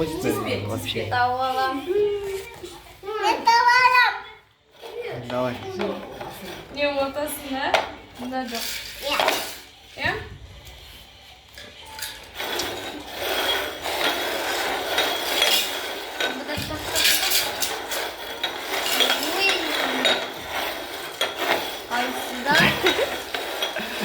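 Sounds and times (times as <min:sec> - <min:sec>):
cups clattering on a table: 0:07.7 - 0:10.2, 0:11.6 - 0:24.0.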